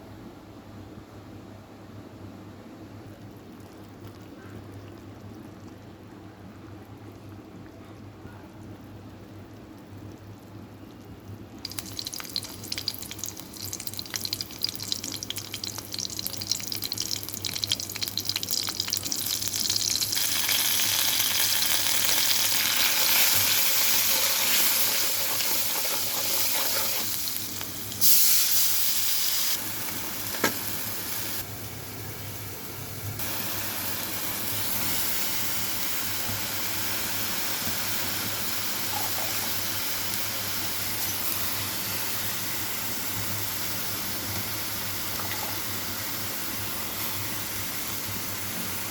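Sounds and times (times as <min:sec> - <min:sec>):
food sizzling in hot oil: 0:11.6 - 0:31.5, 0:33.2 - 0:48.9.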